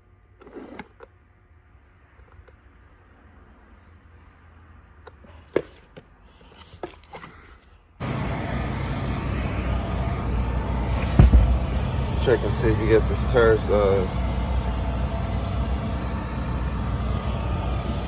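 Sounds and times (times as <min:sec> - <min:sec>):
car engine running: 0:08.0 - 0:18.0.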